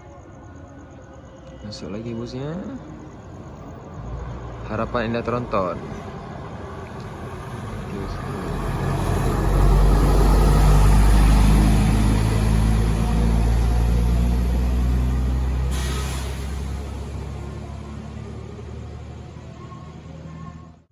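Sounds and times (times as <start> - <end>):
coach engine rumble passing: 3.0 - 20.8
short air hiss: 15.7 - 16.8.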